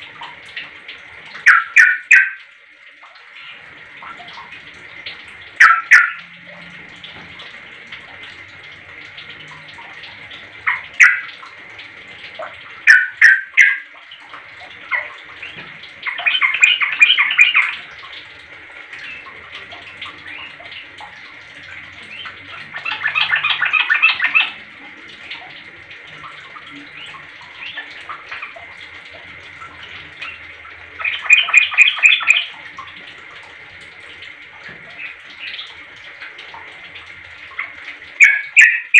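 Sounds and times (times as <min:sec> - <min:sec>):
bulbul calling: 0:01.4 - 0:02.4, 0:05.6 - 0:06.2, 0:12.9 - 0:13.9, 0:15.0 - 0:17.7, 0:31.0 - 0:32.5, 0:38.2 - 0:38.9.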